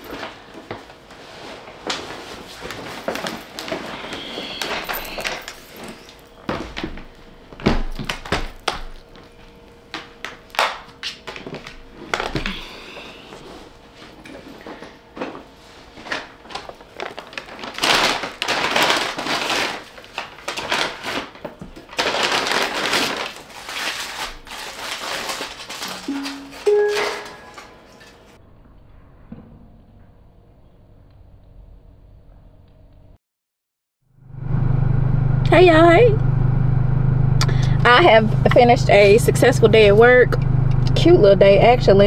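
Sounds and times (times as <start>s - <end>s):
bag rustling and crinkling: 15.8s - 27.4s.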